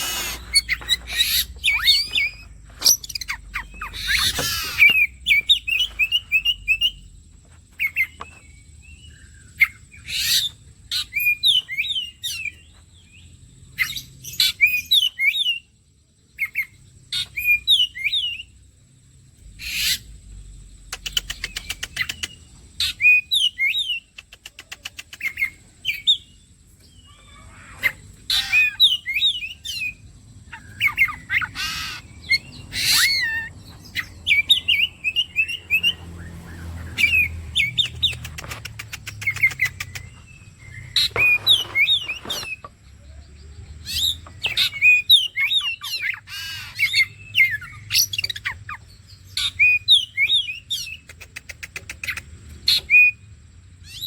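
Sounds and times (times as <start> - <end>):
bird rattling trills: 0.0 - 7.0, 37.0 - 42.7.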